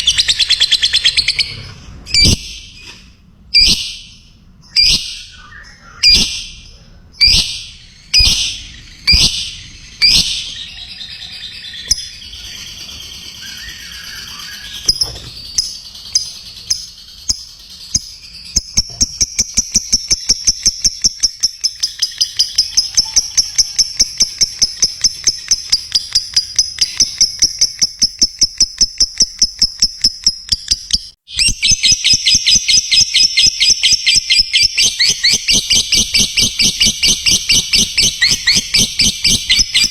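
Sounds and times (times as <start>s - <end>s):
lovebird chattering trill: 0.0s - 2.7s, 3.6s - 39.9s
lovebird squawks: 7.2s - 15.2s, 31.4s - 39.9s.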